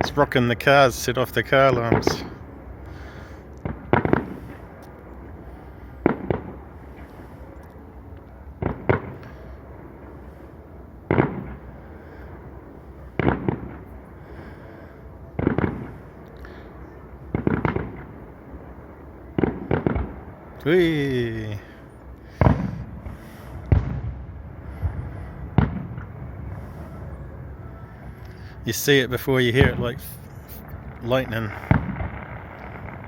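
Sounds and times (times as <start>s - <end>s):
fireworks bursting with crackle: 0.0s - 7.5s, 8.2s - 10.5s, 11.1s - 14.2s, 15.3s - 33.0s.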